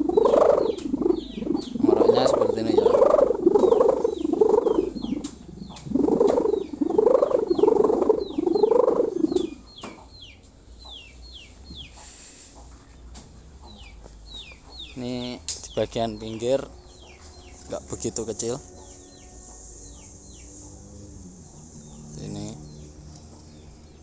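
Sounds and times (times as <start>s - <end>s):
kite hummer drone: 0.0s - 9.6s, 16.1s - 24.0s.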